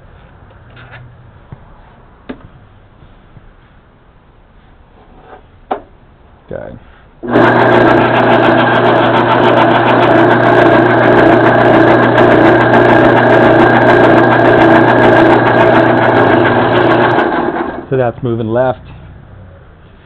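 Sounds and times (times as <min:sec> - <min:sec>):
lathe gear whir: 0:07.2 - 0:17.9
lathe motor hum: 0:07.2 - 0:17.9
metal lathe switching on: 0:07.2 - 0:17.9.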